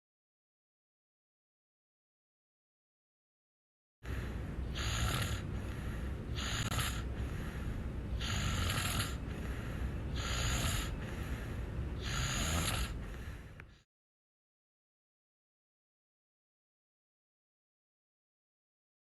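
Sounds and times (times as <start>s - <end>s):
snoring: 4.6s - 7.4s, 8.1s - 11.1s, 12.0s - 13.1s.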